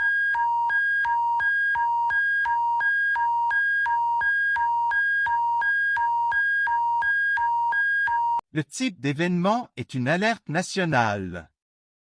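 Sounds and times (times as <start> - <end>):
electronic two-tone alarm: 0.0 - 8.4.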